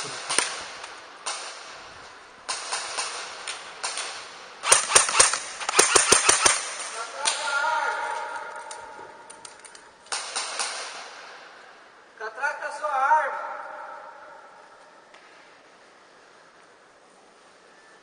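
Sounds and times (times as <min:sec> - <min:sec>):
airsoft guns firing: 0:00.0 - 0:01.8, 0:02.4 - 0:07.6, 0:10.1 - 0:11.4.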